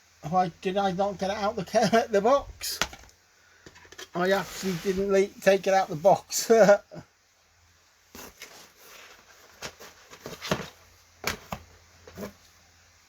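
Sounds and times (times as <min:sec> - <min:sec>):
plastic cases knocking and clicking: 0:02.8 - 0:04.1, 0:09.6 - 0:12.4.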